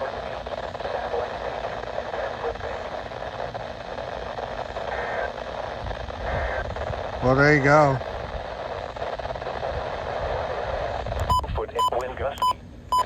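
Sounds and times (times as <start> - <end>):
radio static: 0.0 - 13.0.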